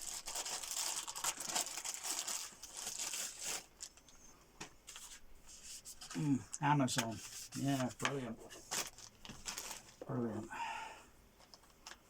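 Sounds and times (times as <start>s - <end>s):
crinkly packaging crumpled: 0.0s - 4.1s, 7.8s - 10.2s.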